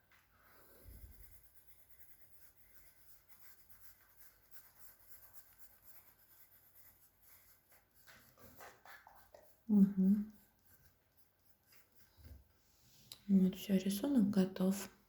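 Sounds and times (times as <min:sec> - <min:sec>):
drawing tool scratching paper: 0:00.8 - 0:12.6.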